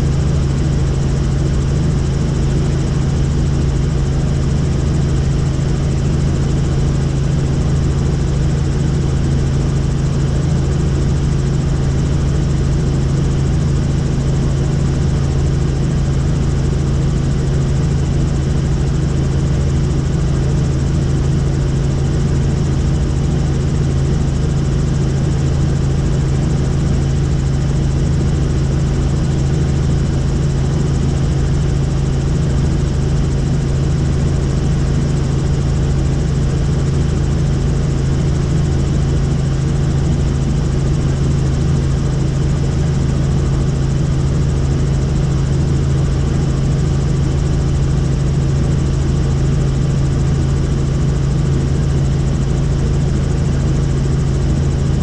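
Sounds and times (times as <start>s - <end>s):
helicopter drone: 0.0s - 55.0s.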